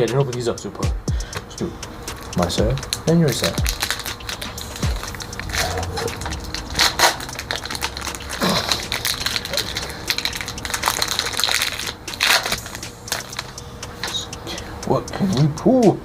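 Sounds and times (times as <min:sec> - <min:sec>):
foil wrappers crinkling and tearing: 0:03.4 - 0:14.2.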